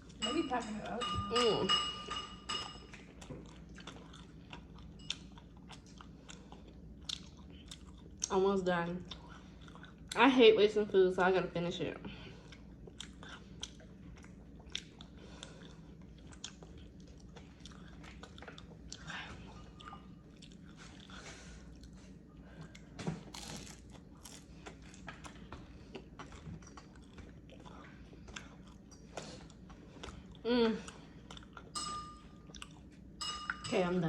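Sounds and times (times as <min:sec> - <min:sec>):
person chewing and biting: 0:03.0 - 0:08.3, 0:09.1 - 0:10.2, 0:12.4 - 0:19.1, 0:19.7 - 0:22.0, 0:22.6 - 0:30.4, 0:31.2 - 0:31.8, 0:32.4 - 0:33.0.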